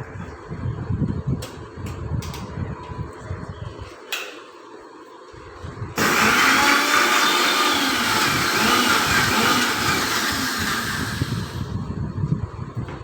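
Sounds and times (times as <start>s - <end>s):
electric blender running: 6.0s - 11.8s.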